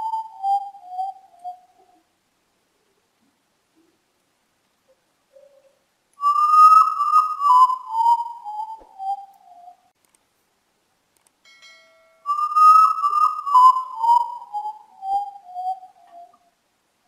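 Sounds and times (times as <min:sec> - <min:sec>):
bird whistling mournful notes: 0:00.0 - 0:02.0, 0:06.2 - 0:09.9, 0:12.2 - 0:16.5.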